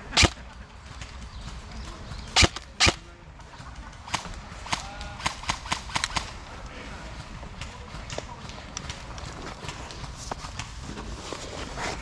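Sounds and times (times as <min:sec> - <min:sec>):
airsoft gun shots: 0:00.0 - 0:00.4, 0:02.3 - 0:03.1, 0:04.0 - 0:06.4.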